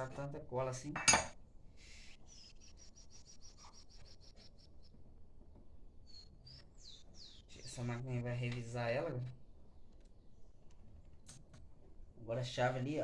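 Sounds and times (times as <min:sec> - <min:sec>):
small bird chirping: 0:01.8 - 0:05.2, 0:06.0 - 0:08.3.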